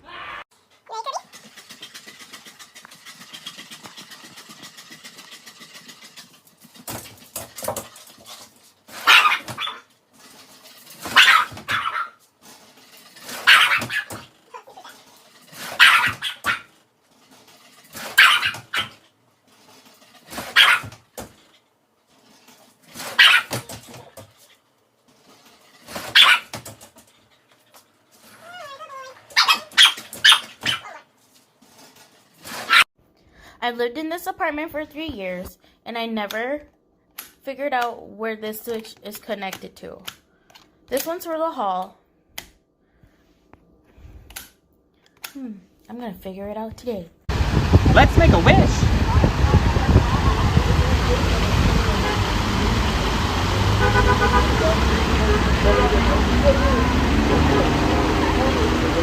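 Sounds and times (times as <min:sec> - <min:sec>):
dog barking: 0:09.0 - 0:09.8, 0:11.1 - 0:12.2, 0:13.4 - 0:14.2, 0:15.7 - 0:16.7, 0:18.1 - 0:19.0, 0:20.4 - 0:20.9, 0:23.1 - 0:23.7, 0:26.1 - 0:26.5, 0:29.3 - 0:31.0.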